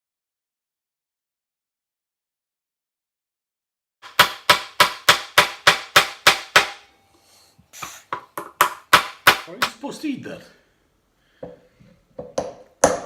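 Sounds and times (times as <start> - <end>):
hammer striking hard candy: 4.0 - 6.9.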